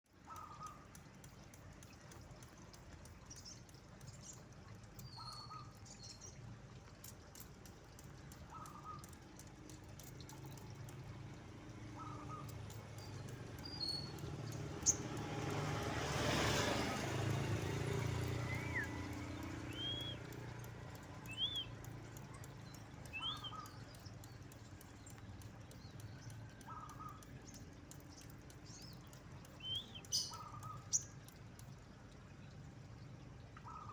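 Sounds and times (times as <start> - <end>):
bird chirping: 0.2 - 6.4, 11.9 - 15.9, 17.3 - 31.4
bird whistled notes: 18.4 - 19.0, 19.7 - 20.2, 21.3 - 21.7, 23.1 - 23.8.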